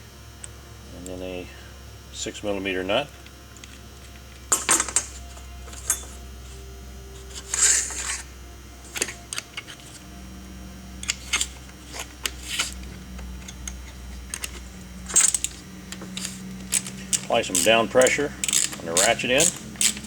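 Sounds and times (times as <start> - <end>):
faint steady hum: 0.0 - 20.0
metal tool parts clinking: 4.5 - 6.2, 8.9 - 9.8, 11.0 - 12.8, 13.4 - 20.0.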